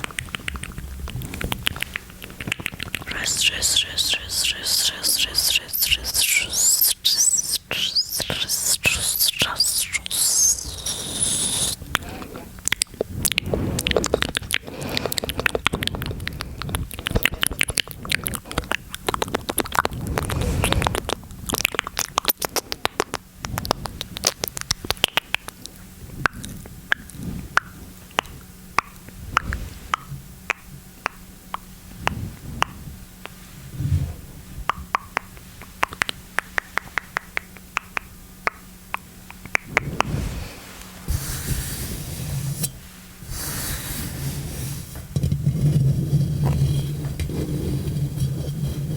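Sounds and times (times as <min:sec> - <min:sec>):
wet mouth clicks and smacks: 0:00.0 - 0:31.7, 0:34.7 - 0:40.0.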